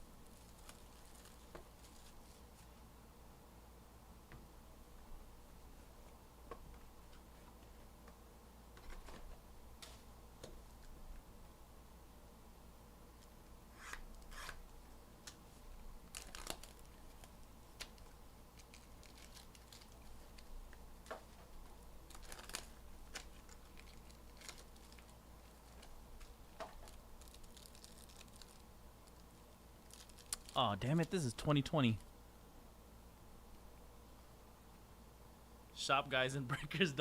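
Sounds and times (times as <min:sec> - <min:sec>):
wrapping tearing and crinkling: 0:00.2 - 0:02.7, 0:16.0 - 0:20.5, 0:22.0 - 0:30.6.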